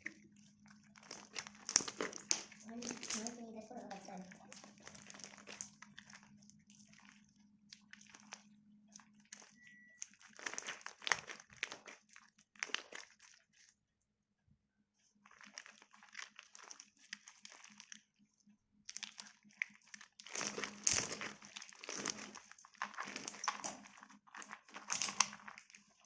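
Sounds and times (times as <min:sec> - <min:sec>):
slime crackling: 0:00.0 - 0:13.7, 0:15.2 - 0:18.1, 0:18.8 - 0:26.0.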